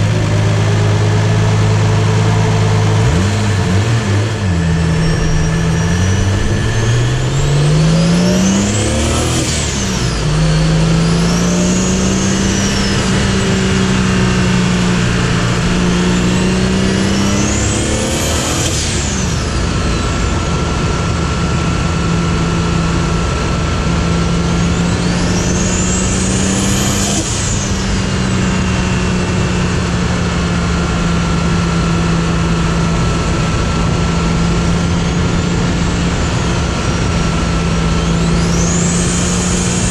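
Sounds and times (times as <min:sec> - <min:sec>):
steady engine drone: 0:00.0 - 0:39.9
cars driving past: 0:02.9 - 0:15.7.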